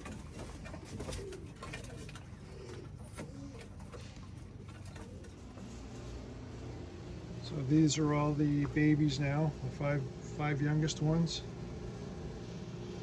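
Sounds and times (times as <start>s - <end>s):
pigeons cooing: 0.0s - 13.0s.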